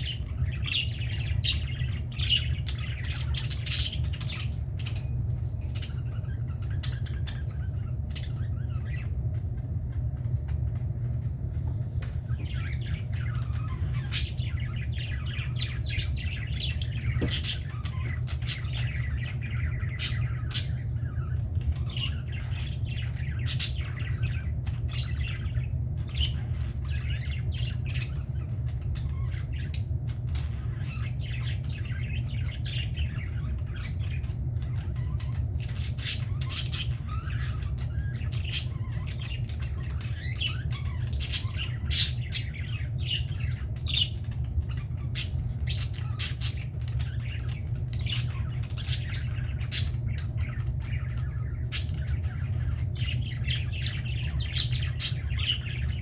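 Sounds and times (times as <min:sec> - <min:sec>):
budgerigars chattering: 0:00.0 - 0:05.1, 0:12.3 - 0:56.0
steady low hum: 0:00.0 - 0:56.0.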